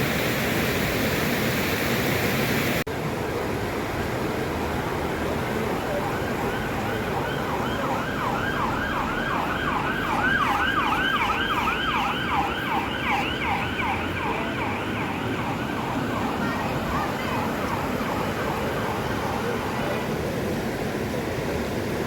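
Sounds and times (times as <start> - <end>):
steady rushing background noise: 0.0 - 22.0
emergency siren yelping: 5.6 - 19.9.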